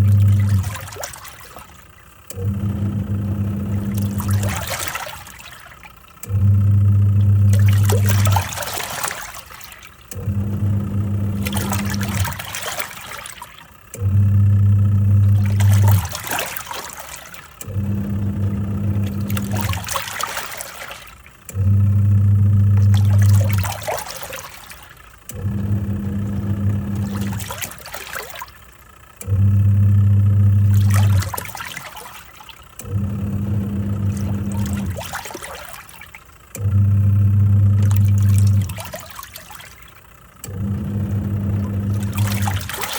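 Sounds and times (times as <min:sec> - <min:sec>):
washing machine motor humming: 0:00.0 - 0:42.9
water sloshing: 0:00.0 - 0:42.9.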